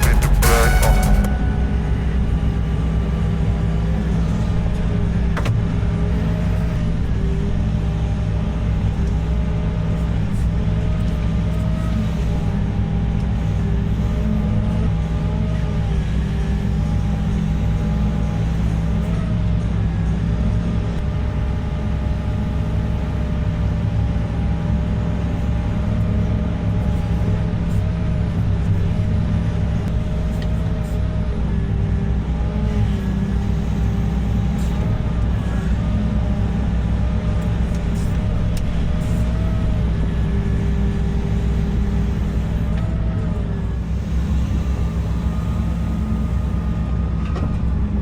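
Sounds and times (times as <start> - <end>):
wavering whine: 0.0 - 5.2
heavy diesel engine running: 0.0 - 48.0.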